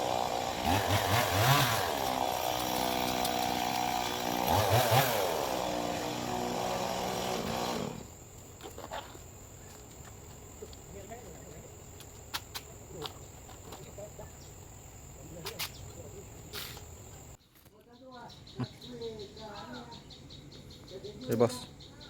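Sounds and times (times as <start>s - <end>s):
chainsaw revving: 0.0s - 8.1s.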